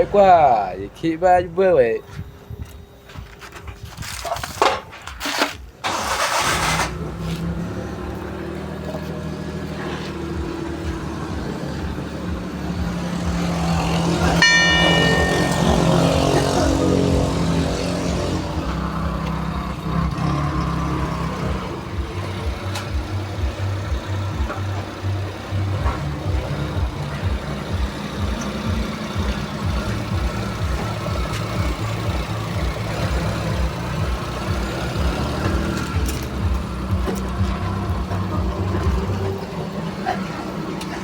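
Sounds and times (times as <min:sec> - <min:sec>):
engine cranking and idling: 0:00.0 - 0:41.0
short high tone: 0:14.4 - 0:17.6.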